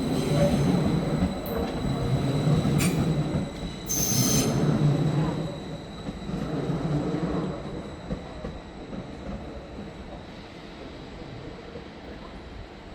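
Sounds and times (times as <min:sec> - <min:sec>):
train rumbling: 0:00.0 - 0:12.9
high wheel squeal: 0:03.8 - 0:04.7.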